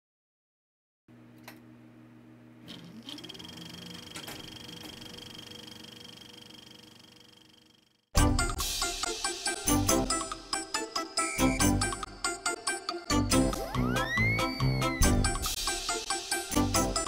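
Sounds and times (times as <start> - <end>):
small motor whirring: 2.7 - 8.0.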